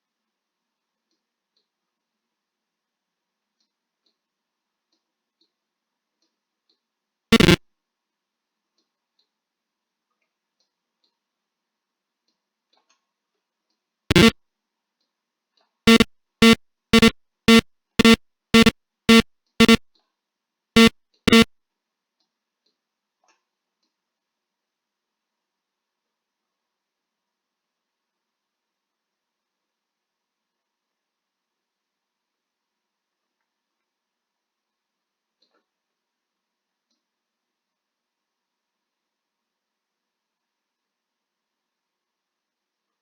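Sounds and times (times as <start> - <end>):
alarm clock buzzer beeping: 7.4 - 7.6, 14.1 - 14.4, 15.9 - 19.9, 20.8 - 21.5.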